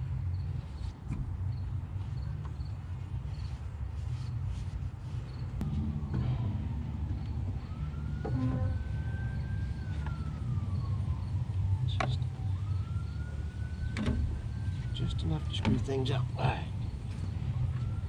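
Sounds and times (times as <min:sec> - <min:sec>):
steady low rumble: 0:00.0 - 0:15.5
faint siren wailing: 0:05.6 - 0:18.0.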